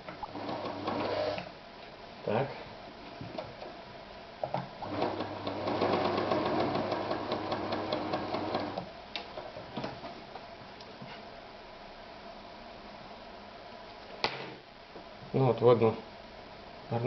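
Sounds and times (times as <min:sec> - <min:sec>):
sewing machine stitching: 0:00.3 - 0:01.5, 0:04.8 - 0:08.9.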